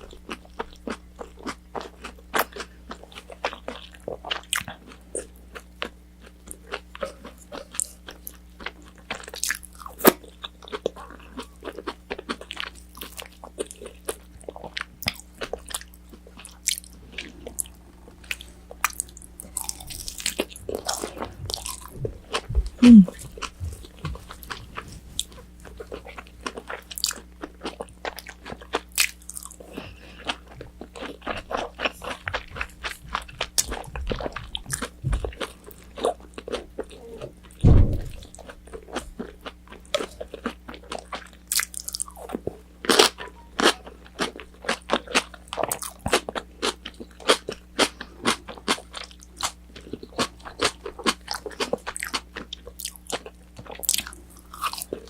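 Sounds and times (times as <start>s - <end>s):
chewing and crunching: 0.0s - 55.0s
low thud: 37.6s - 38.2s.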